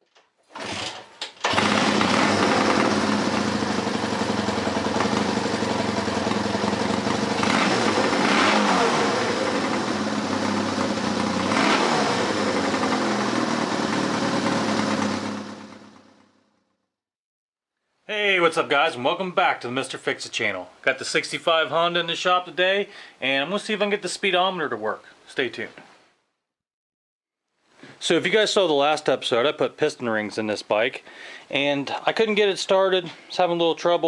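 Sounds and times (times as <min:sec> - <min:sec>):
motorcycle engine starting and revving: 0:00.5 - 0:16.9.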